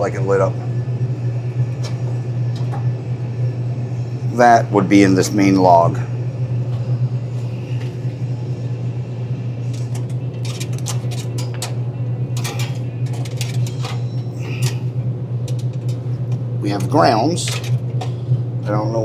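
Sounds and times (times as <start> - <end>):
steady low hum: 0.0 - 19.0
handling clicks and rustles: 1.6 - 3.1, 6.8 - 8.2, 9.6 - 18.3.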